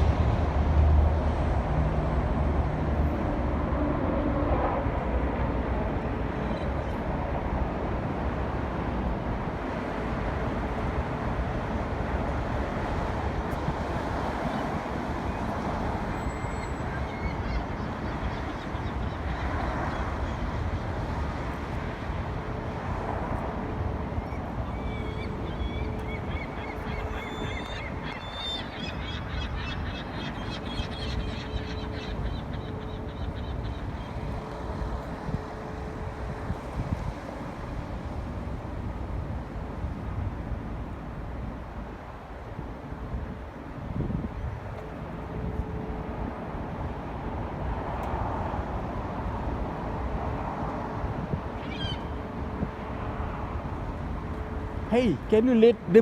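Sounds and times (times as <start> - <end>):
wind rumble on microphone: 0.0 - 28.7, 31.1 - 45.3
traffic noise: 0.0 - 56.0
flock of birds calling: 24.6 - 34.3.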